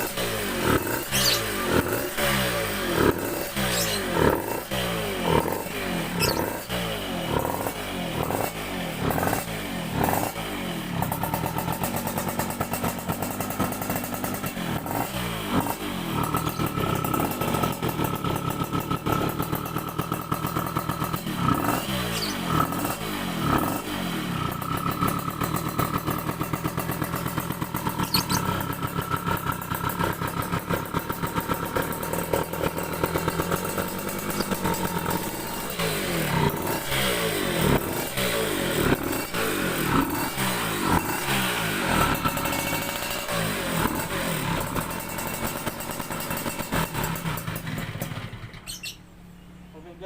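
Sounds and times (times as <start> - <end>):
motorcycle engine idling: 0.0 - 50.0
motorcycle throttle blips: 5.3 - 9.4, 11.0 - 40.2.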